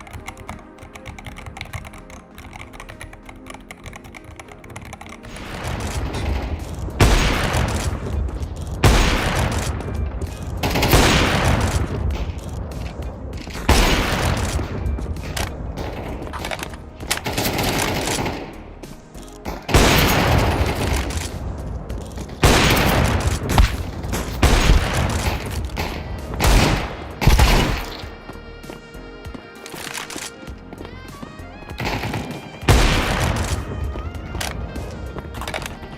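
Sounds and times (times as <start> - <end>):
background music: 0.0 - 35.9
video game gunfire: 31.8 - 35.6.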